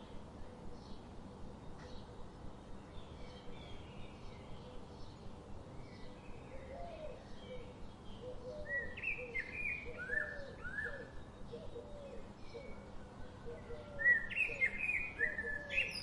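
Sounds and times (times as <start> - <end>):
outdoor noise: 0.0 - 16.0
birds chirping and calling: 3.0 - 16.0.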